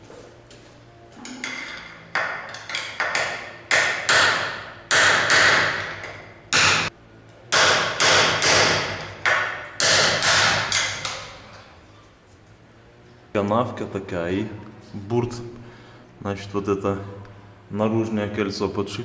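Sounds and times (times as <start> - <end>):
hammer striking metal: 1.2 - 6.9, 7.5 - 11.4.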